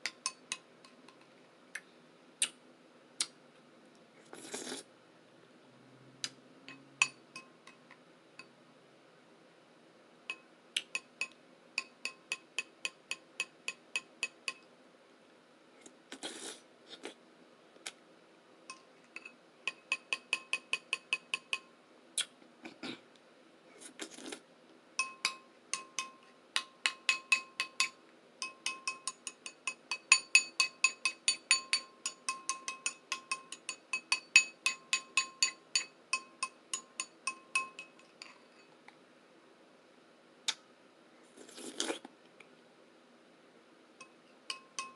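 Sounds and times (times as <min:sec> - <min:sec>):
bowl tapped with bell-like ring: 0:06.7 - 0:07.8, 0:10.3 - 0:14.7, 0:25.0 - 0:38.1, 0:44.0 - 0:44.9.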